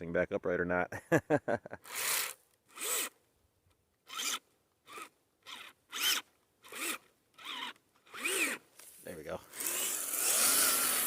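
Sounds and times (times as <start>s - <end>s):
rc vehicle electric motor revving: 1.8s - 3.2s, 4.0s - 8.7s, 9.4s - 11.0s.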